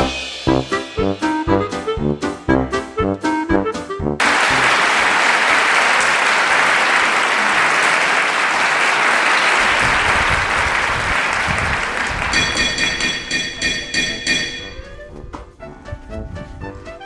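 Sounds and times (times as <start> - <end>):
brass-led swing music: 0.0 - 4.8, 14.7 - 17.0
loud applause: 4.2 - 13.4.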